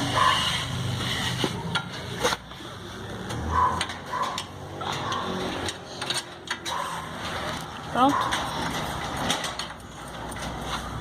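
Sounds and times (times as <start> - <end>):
metallic clicks and knocks of tools: 3.2 - 6.8.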